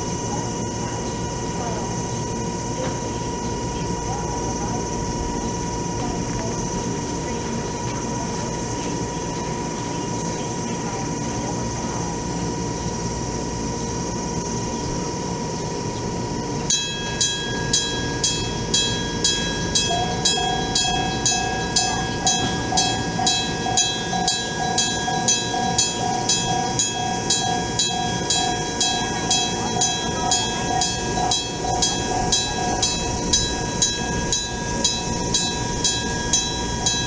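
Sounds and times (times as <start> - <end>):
mechanical hum: 0.0 - 37.0
low pulsing tone: 14.2 - 37.0
level-crossing bell ringing: 16.4 - 37.0.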